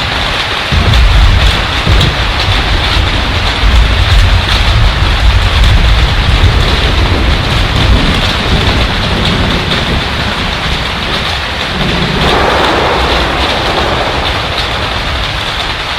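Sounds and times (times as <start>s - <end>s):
hail and rain on a flat roof: 0.0s - 15.9s
low thunder rumble: 0.0s - 15.9s.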